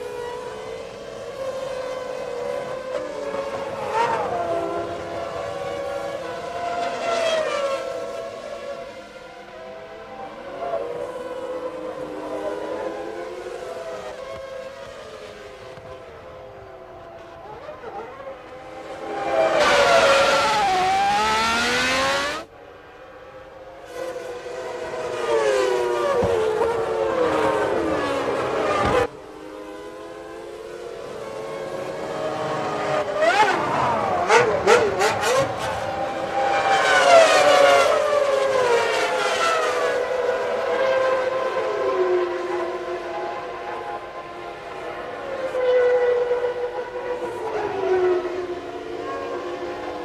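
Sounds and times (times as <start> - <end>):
racing car engines revving past: 0.0 - 22.5, 23.2 - 50.0.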